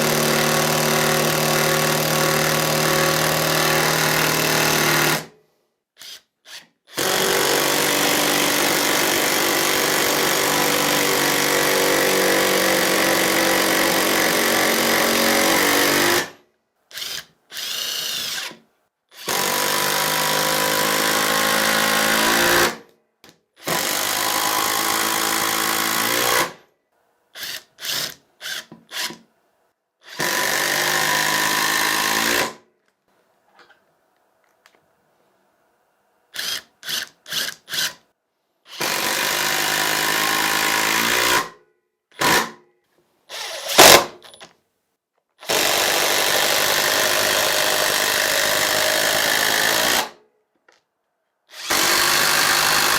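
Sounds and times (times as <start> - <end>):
cordless impact driver hammering: 43.3 - 44.3, 51.6 - 52.9.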